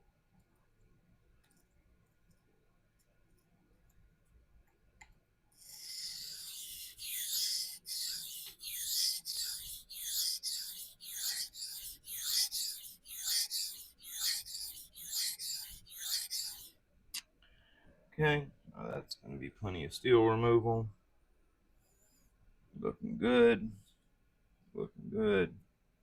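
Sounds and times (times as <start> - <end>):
knife scraping on sharpening stone: 5.6 - 16.7.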